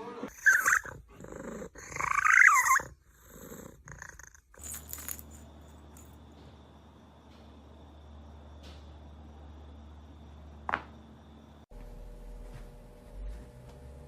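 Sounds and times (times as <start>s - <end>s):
cat yowling: 1.8s - 2.9s
steady low hum: 4.6s - 14.0s.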